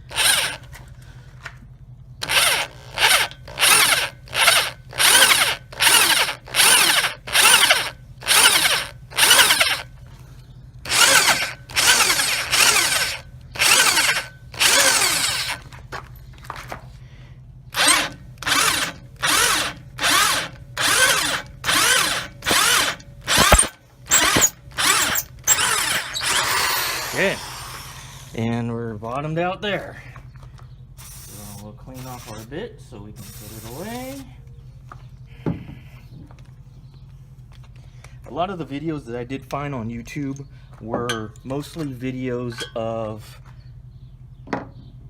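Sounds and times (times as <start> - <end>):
power drill cutting into steel: 0.1 - 0.6, 2.2 - 9.9, 10.9 - 15.6, 17.7 - 28.4, 31.0 - 32.5, 33.2 - 34.2.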